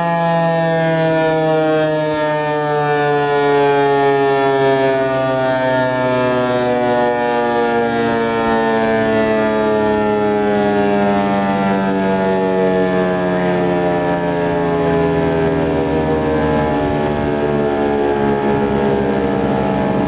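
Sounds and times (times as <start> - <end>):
warning siren winding down: 0.0 - 20.0.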